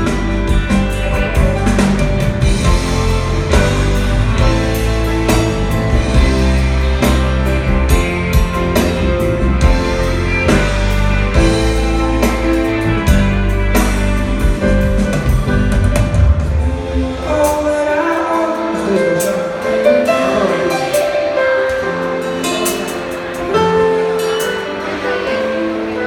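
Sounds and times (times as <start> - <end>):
live band playing slow song: 0.0 - 26.0
man singing: 16.8 - 21.2.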